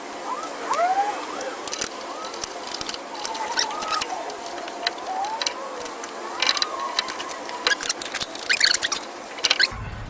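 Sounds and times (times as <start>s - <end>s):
metal clicks of hand tools: 1.6s - 9.7s.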